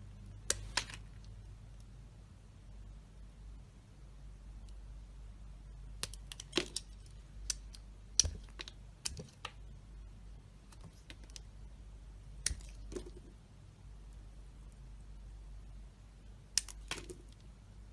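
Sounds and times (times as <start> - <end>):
knife cutting dry soap: 6.0 - 9.6, 12.4 - 13.2.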